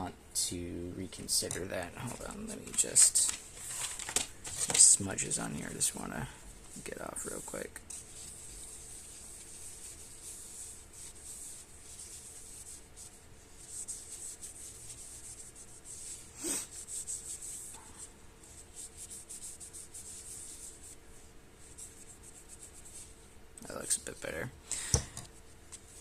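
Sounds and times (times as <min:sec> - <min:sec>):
cloth wiping a knife blade: 0:05.3 - 0:17.8.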